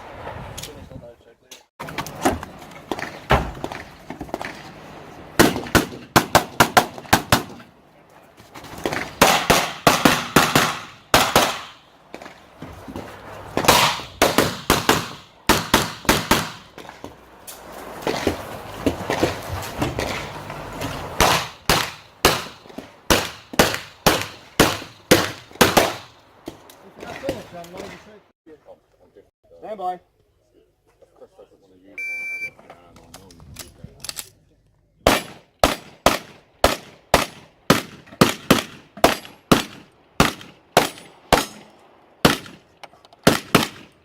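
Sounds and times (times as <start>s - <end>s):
pistol shots: 9.2s - 11.8s, 13.6s - 16.7s, 21.2s - 26.2s, 35.0s - 42.6s, 43.2s - 44.0s.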